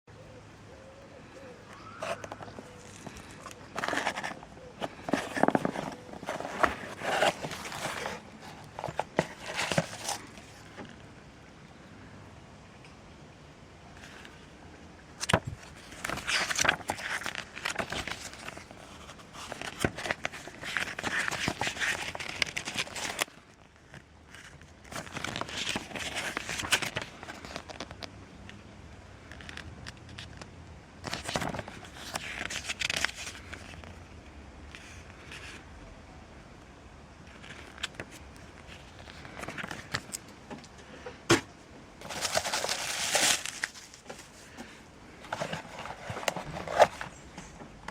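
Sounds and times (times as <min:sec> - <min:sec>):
rustling and scraping: 0:01.8 - 0:11.1, 0:15.2 - 0:28.1, 0:29.3 - 0:34.0, 0:37.3 - 0:47.9.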